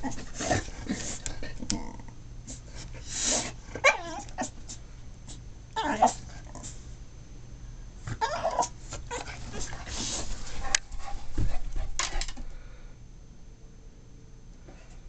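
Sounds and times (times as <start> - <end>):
dog whining and yelping: 3.8 - 4.6, 5.8 - 6.2, 8.1 - 9.7.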